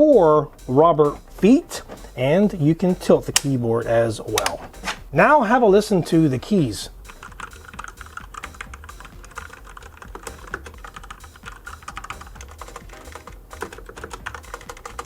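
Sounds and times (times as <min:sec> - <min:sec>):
fast typing on mechanical keyboard: 0:07.2 - 0:15.0.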